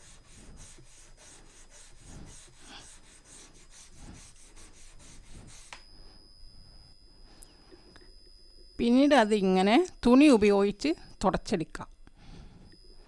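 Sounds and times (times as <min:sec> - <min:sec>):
brush scrubbing rubber gasket: 0:00.0 - 0:05.7.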